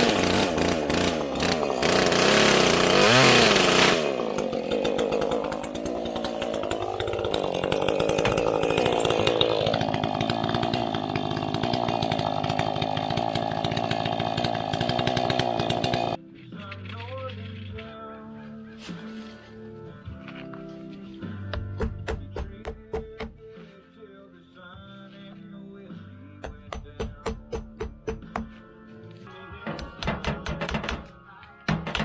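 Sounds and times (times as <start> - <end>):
chainsaw engine running: 0.0 - 16.2.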